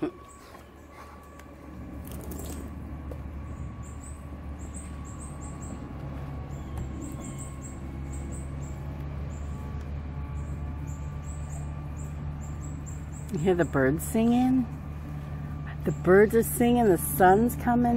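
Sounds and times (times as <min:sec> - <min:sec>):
birds chirping: 0:00.0 - 0:17.9
low steady rumble: 0:00.0 - 0:17.9.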